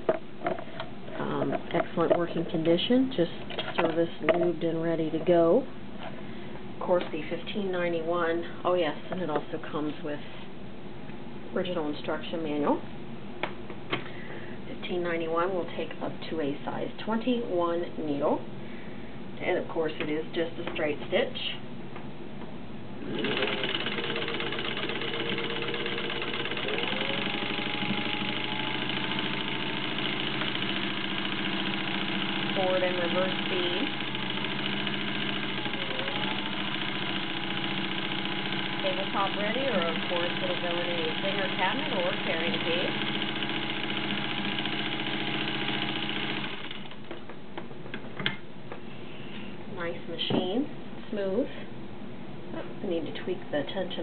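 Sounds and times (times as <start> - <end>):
sewing machine running: 23.0 - 47.1.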